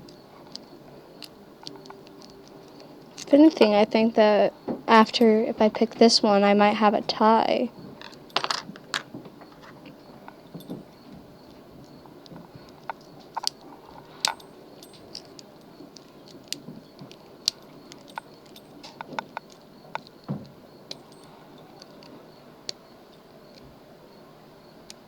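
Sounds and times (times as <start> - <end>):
lock pick clicking in a lock: 14.2 - 20.2.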